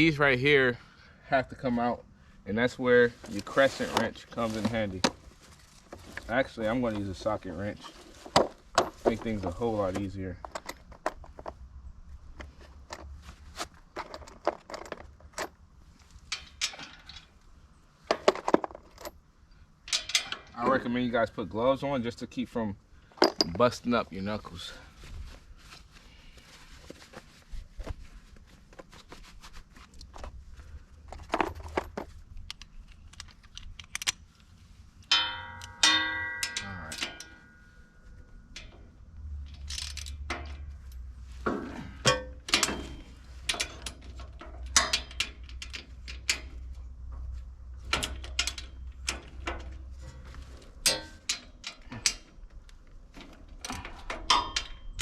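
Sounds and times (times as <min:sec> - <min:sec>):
low steady hum: 0:00.0 - 0:55.0
metal parts clinking and knocking: 0:05.9 - 0:11.6, 0:12.3 - 0:15.6, 0:16.2 - 0:17.4, 0:18.1 - 0:19.2, 0:19.8 - 0:20.8, 0:23.2 - 0:23.7, 0:31.0 - 0:34.3, 0:35.0 - 0:55.0
ringing metal clang: 0:35.1 - 0:38.8, 0:50.9 - 0:52.2.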